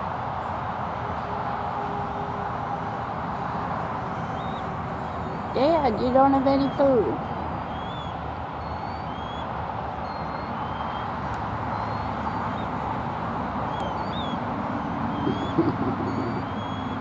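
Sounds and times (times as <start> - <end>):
distant road traffic: 0.0 - 17.0
small birds chirping: 4.1 - 13.0, 13.6 - 17.0.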